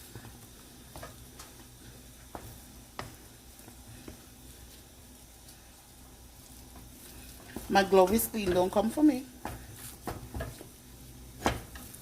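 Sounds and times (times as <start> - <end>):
faint steady hiss and hum: 0.0 - 12.0.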